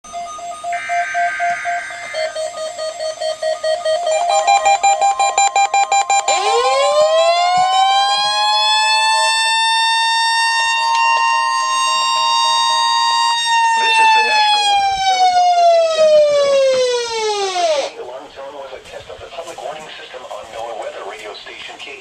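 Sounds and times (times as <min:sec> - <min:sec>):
pulsing electronic beep: 0:00.1 - 0:07.1
steady electronic tone: 0:00.1 - 0:15.1
siren winding up: 0:00.1 - 0:18.0.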